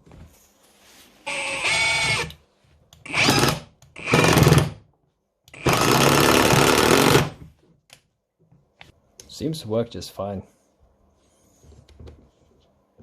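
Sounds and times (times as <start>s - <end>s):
impact driver hammering screw: 3.1s - 4.8s, 5.5s - 7.4s.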